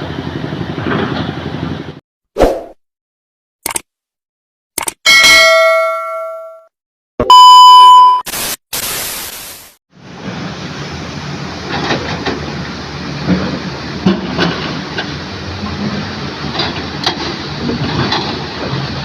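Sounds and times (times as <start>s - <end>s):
rumble of engines: 0.0s - 2.0s, 9.9s - 19.0s
bell-like ding: 5.1s - 6.7s.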